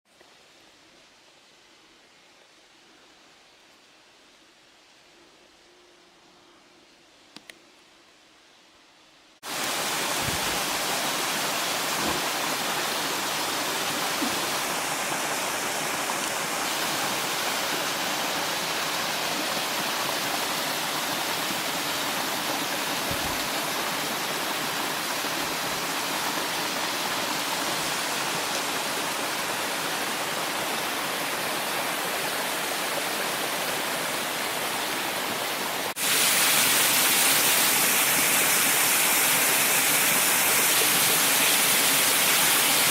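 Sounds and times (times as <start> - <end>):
waterfall rushing: 9.4 - 42.9.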